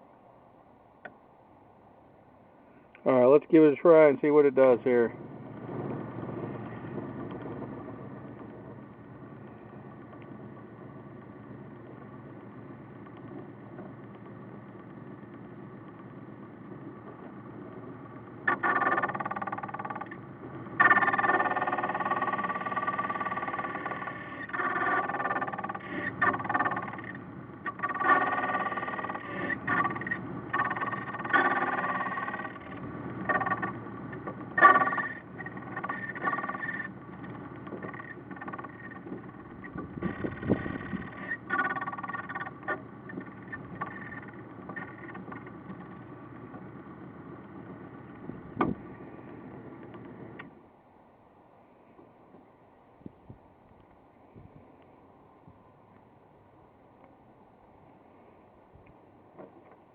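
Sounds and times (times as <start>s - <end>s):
electric motor humming: 5.2s - 50.5s.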